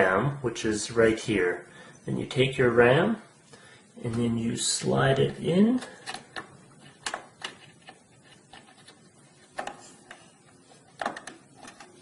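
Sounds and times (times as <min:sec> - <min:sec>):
plastic clicks and taps: 0:05.8 - 0:08.0, 0:11.0 - 0:11.9.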